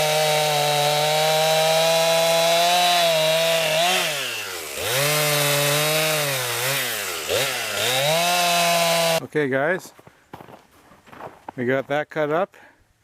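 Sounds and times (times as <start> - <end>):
chainsaw cutting wood: 0.0 - 9.2.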